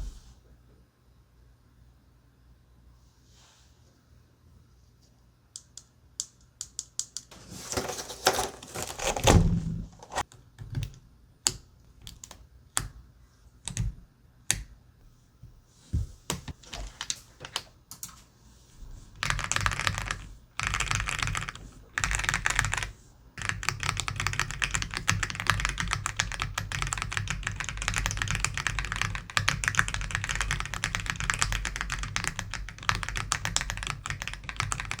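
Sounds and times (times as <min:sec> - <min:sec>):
keyboard typing: 0:19.2 - 0:35.0.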